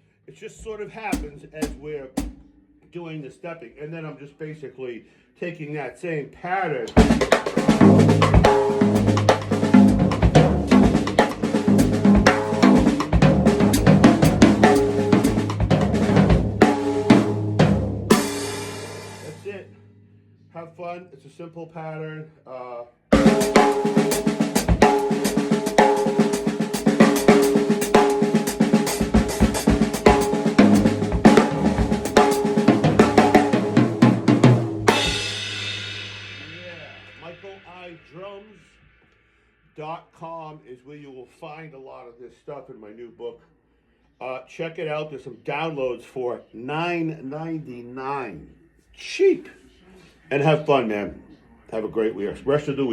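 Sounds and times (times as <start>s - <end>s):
drum kit groove: 0.5s - 2.6s, 6.8s - 19.9s, 23.1s - 39.1s
foot hi-hat: 7.0s - 16.6s, 23.2s - 33.5s.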